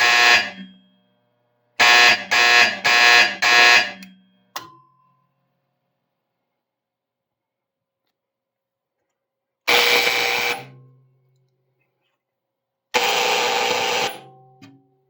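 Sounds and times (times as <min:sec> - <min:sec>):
fire alarm blasts: 0:00.0 - 0:00.8, 0:01.8 - 0:04.2, 0:09.7 - 0:10.7, 0:13.0 - 0:14.3.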